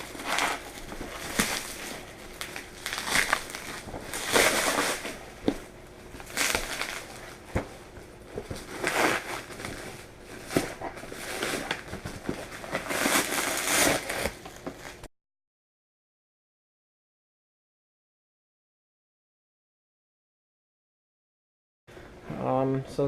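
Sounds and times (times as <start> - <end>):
packaging rustling and crinkling: 0.0 - 15.1.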